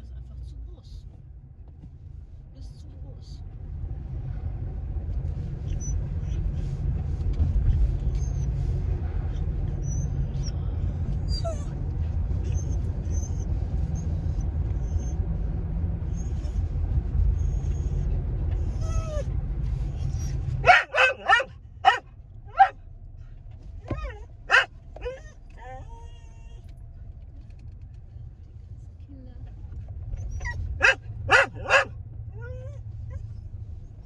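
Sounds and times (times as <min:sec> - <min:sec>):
car low rumble: 0:00.0 - 0:34.0
dog barking loudly: 0:20.6 - 0:22.8, 0:24.5 - 0:25.2, 0:30.8 - 0:31.9.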